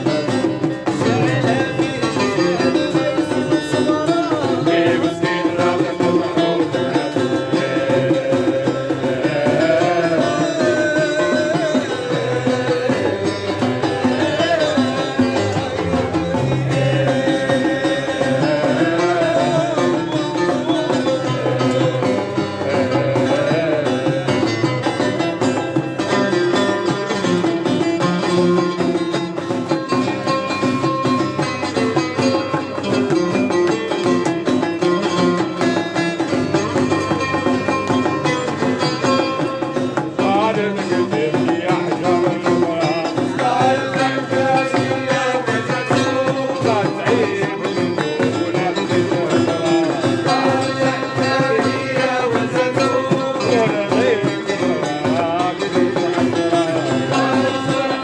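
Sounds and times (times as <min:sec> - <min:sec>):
hand drum beat: 0:00.0 - 0:58.0
plucked string melody: 0:00.0 - 0:58.0.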